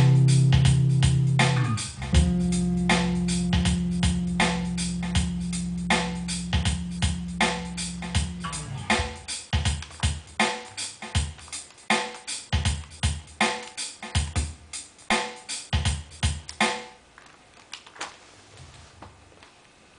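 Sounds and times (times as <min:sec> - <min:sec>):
bass jingle: 0:00.0 - 0:09.2
drum machine beat: 0:00.0 - 0:17.0.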